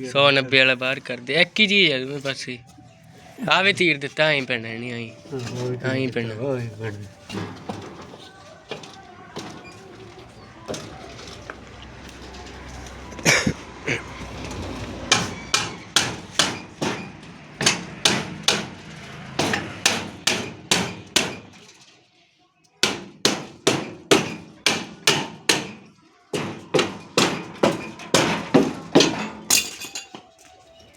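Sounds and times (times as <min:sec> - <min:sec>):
hammer blows ringing: 0:15.1 - 0:21.5, 0:22.8 - 0:25.8, 0:26.4 - 0:29.8.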